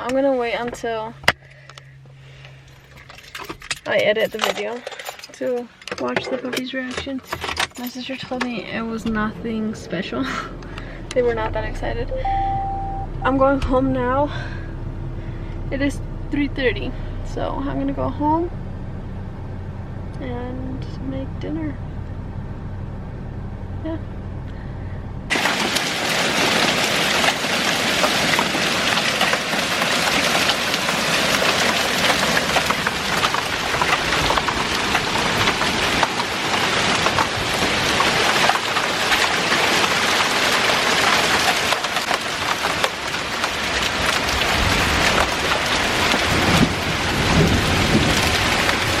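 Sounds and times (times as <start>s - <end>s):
heavy rain: 25.3s - 49.0s.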